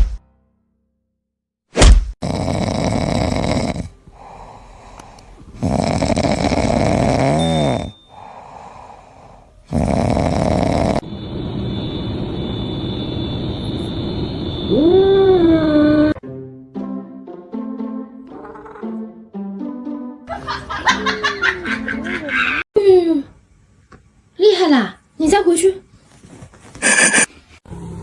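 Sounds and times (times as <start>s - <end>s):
pet snoring: 2.2s - 4.0s, 5.5s - 8.3s, 9.6s - 11.0s.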